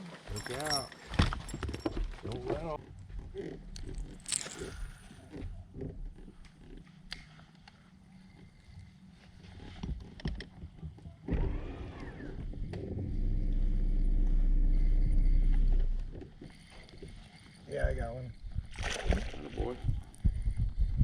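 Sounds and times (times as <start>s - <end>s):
light clicks and knocks in boat: 0.4s - 13.0s, 15.5s - 18.2s
boat motor humming: 10.7s - 17.6s.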